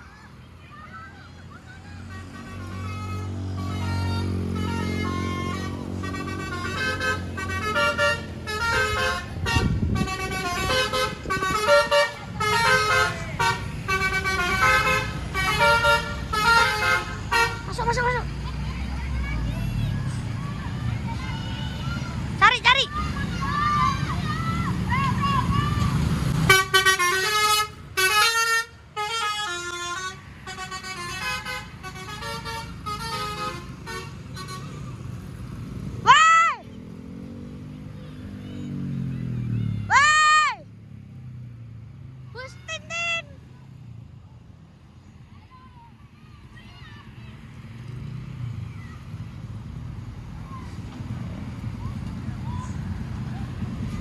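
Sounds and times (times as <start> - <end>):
bus engine running: 0.0 - 54.0
musical air horn tune: 3.1 - 17.9, 26.5 - 34.8.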